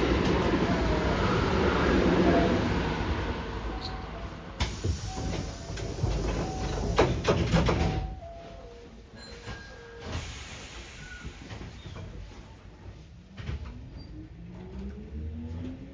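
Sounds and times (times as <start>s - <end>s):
train doors air hissing: 4.5s - 8.0s, 10.0s - 11.8s.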